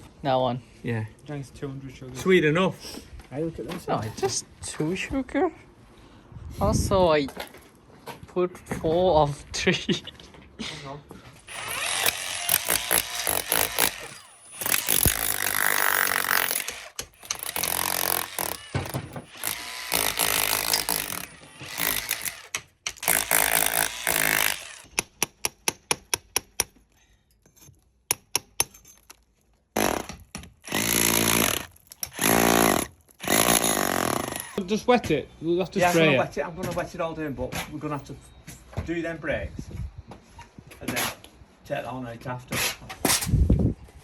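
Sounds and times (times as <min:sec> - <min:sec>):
power tool running: 0:11.5 - 0:24.9, 0:29.8 - 0:34.6.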